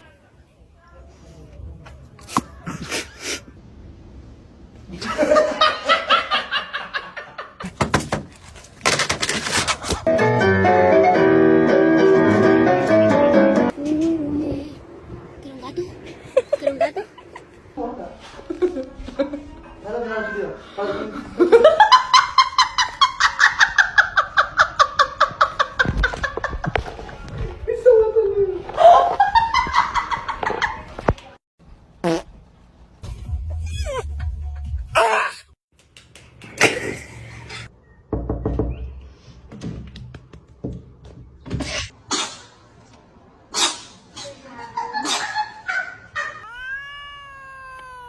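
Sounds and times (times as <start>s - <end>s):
knocks and thumps: 7.6s - 10.1s.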